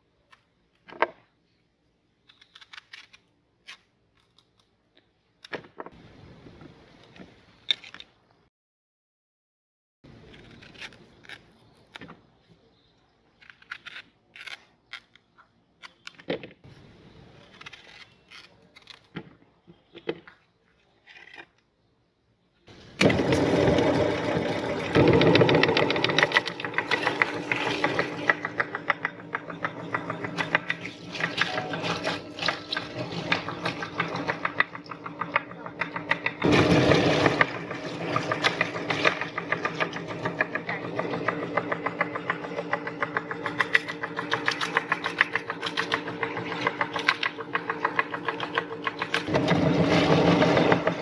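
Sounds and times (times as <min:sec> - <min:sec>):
meat grinder motor chattering: 0:23.0 - 0:51.0.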